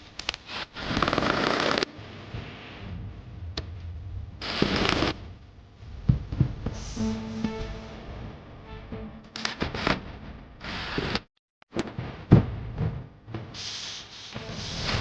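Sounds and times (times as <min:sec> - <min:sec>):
low knocks: 0:02.3 - 0:07.8.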